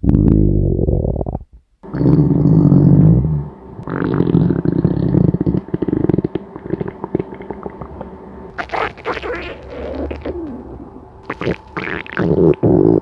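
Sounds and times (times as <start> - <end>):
stomach growling: 0.0 - 13.0
bubbly stomach gurgles: 2.0 - 10.6, 11.3 - 13.0.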